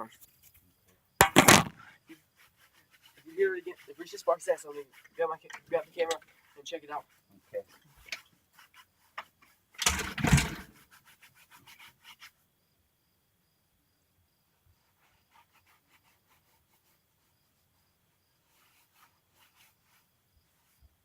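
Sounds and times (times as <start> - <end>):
rubbing on microphone: 1.6 - 9.8, 10.6 - 12.4, 14.7 - 21.0
light clicks and scrapes: 1.8 - 12.4.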